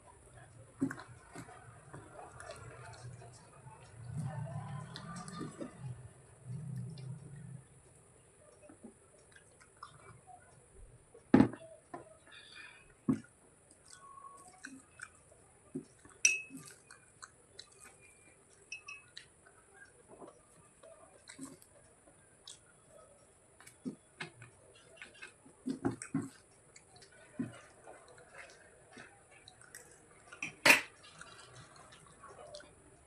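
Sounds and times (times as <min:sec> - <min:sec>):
person chewing food: 0:00.0 - 0:33.0
ringing clink: 0:16.3 - 0:16.5.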